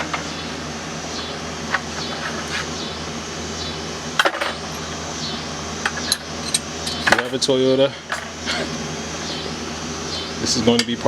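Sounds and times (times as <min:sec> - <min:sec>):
steady low hum: 0:00.0 - 0:10.6
metal tools clinking: 0:05.9 - 0:07.5.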